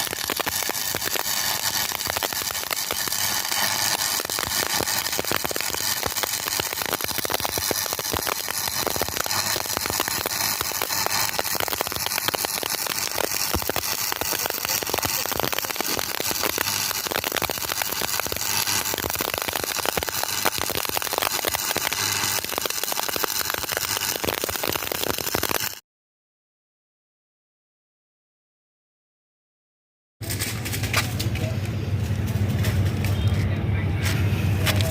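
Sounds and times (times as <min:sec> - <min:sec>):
arc welding crackling sizzle: 0:00.0 - 0:25.8.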